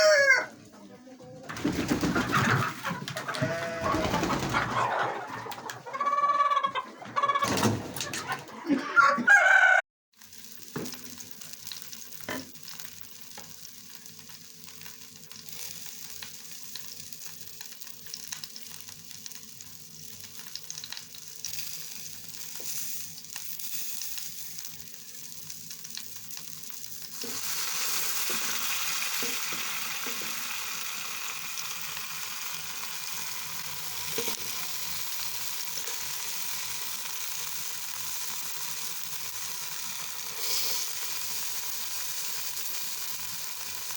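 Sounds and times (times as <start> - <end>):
food sizzling in a frying pan: 10.2 - 43.9.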